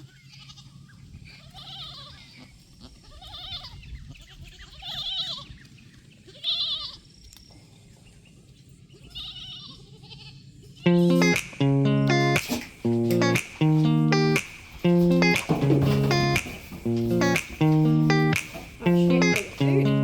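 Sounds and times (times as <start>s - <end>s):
goats bleating: 1.4s - 5.5s, 9.0s - 10.5s.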